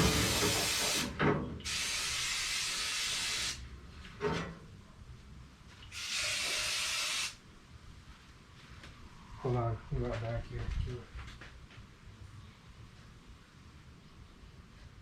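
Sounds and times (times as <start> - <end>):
aerosol spray hissing: 1.7 - 3.6, 5.9 - 7.4.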